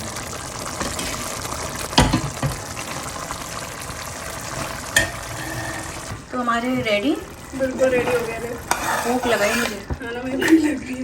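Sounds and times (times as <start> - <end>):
gravy sizzling in a pan: 0.0 - 11.0
spoon knocking against pan: 4.9 - 5.2.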